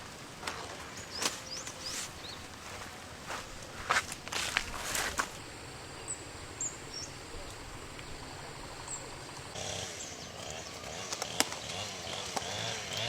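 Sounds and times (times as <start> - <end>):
rustling footsteps: 0.0 - 5.5
steady background hiss: 0.0 - 9.6.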